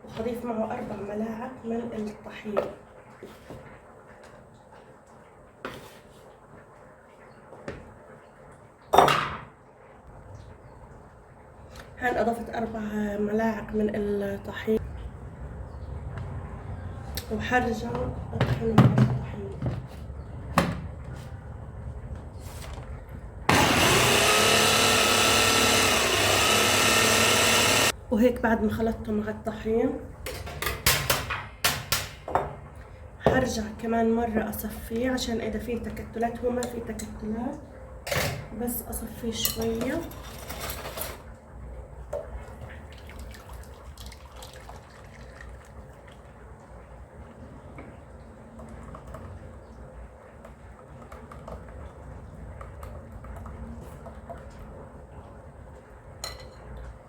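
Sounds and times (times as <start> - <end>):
electric blender motor whine: 23.5 - 27.9
liquid trickling through strainer: 42.4 - 46.8.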